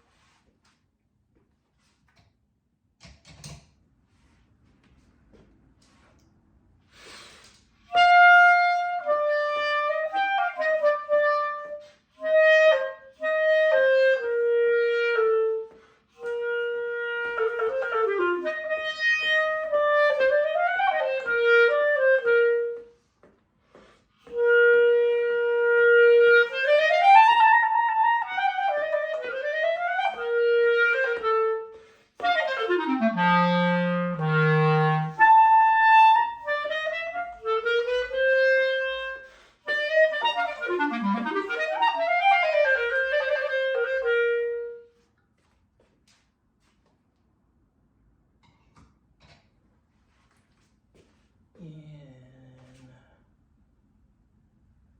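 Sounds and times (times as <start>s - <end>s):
solo clarinet playing: 7.9s - 23.0s, 24.2s - 45.0s.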